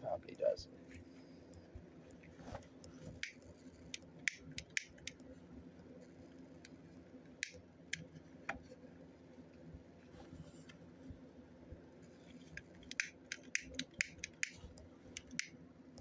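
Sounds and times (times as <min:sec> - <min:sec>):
sharp plastic clicks and taps: 0:03.2 - 0:05.2, 0:12.7 - 0:16.0.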